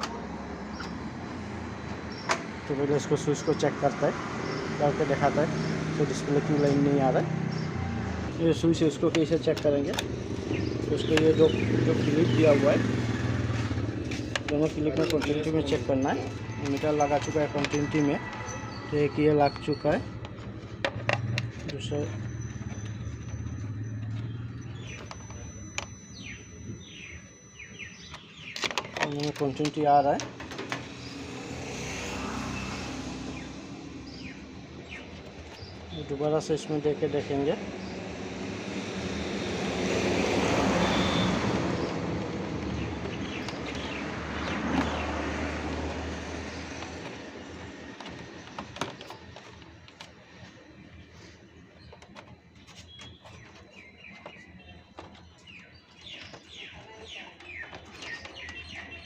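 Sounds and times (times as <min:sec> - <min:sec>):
vehicle passing: 0:00.0 - 0:25.2, 0:30.7 - 0:48.8.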